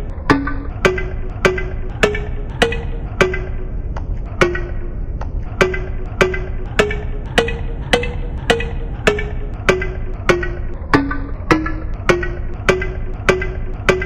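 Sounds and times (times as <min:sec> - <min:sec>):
pitched percussive hits playing a tune: 0:00.0 - 0:14.0
steady low rumble: 0:00.0 - 0:14.0.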